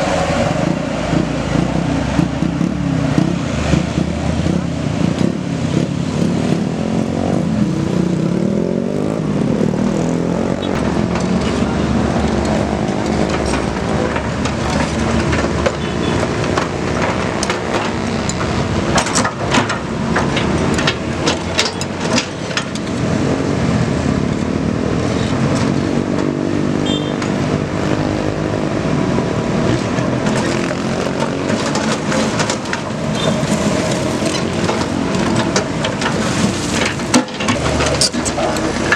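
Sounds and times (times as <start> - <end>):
excavator diesel engine under load: 0.0 - 26.4, 28.3 - 38.9
sharp knocks and clanks: 9.2 - 23.2, 29.7 - 38.9.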